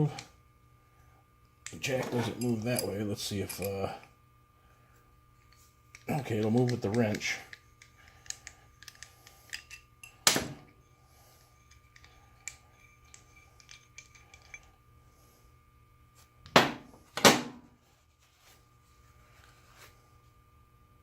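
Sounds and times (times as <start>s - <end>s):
small metallic clicks: 5.4s - 10.2s.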